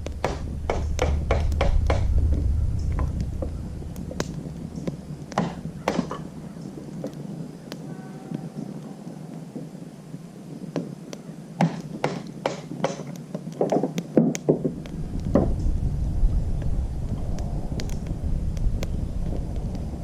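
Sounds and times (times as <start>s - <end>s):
firewood knocking and cracking: 0.0s - 7.8s, 10.7s - 15.8s, 16.5s - 20.0s
wind on microphone: 0.0s - 20.0s.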